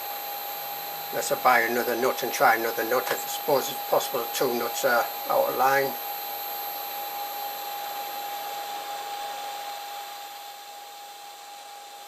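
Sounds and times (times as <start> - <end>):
constant high whine: 0.0 - 12.0
fan hiss: 1.1 - 6.1.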